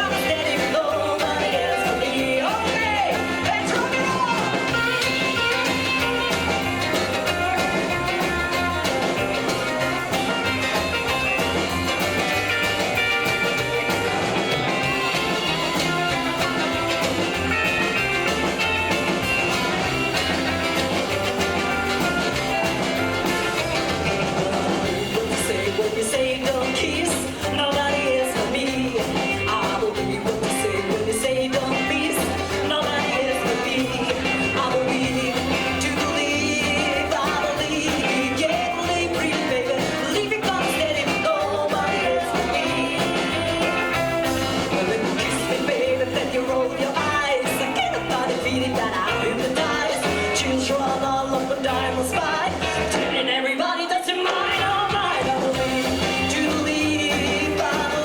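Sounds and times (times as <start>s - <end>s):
person singing: 0.0s - 58.0s
rockabilly band playing: 0.0s - 58.0s.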